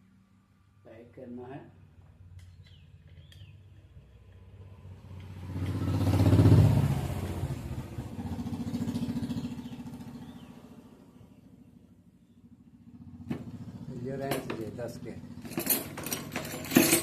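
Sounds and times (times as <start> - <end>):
passing vehicle engine: 3.9 - 16.4.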